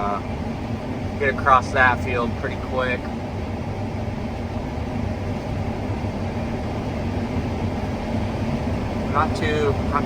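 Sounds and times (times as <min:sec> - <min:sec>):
combine harvester droning: 0:00.0 - 0:10.0.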